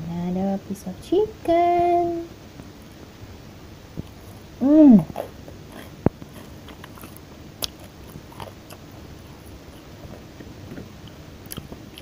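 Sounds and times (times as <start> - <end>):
chewing crunchy fried chicken: 5.0 - 12.0.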